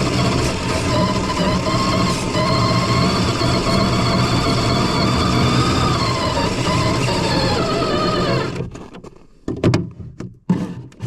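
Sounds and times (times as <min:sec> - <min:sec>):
drone motors whining: 0:00.0 - 0:08.8.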